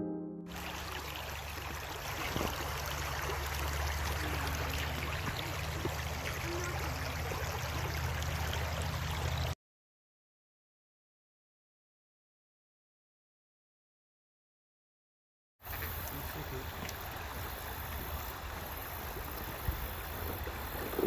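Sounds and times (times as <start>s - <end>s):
music: 0.0s - 0.8s
water rushing: 0.5s - 9.5s, 15.7s - 21.0s.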